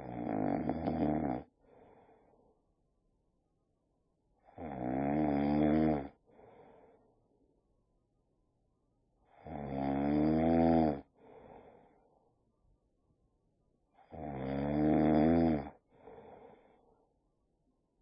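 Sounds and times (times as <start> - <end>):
dog snoring: 0.0 - 1.5, 4.4 - 6.2, 9.3 - 11.1, 14.0 - 16.5.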